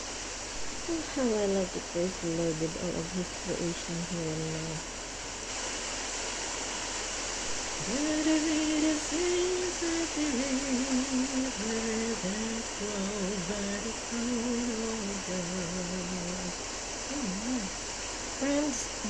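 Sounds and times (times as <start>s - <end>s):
steady rushing hiss: 0.0s - 19.0s
person humming a slow melody: 7.8s - 17.7s.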